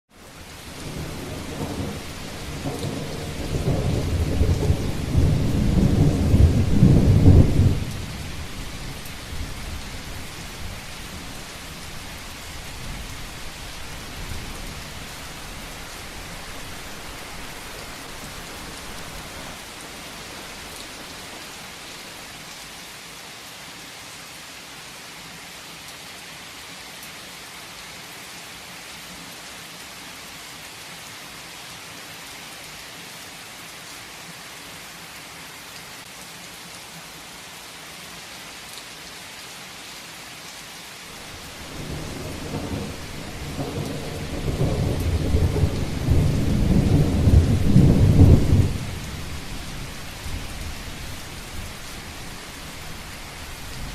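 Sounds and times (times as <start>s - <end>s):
heavy rain falling: 0.1s - 53.9s
thunder rumble: 0.7s - 11.9s, 12.8s - 22.1s, 41.2s - 53.9s.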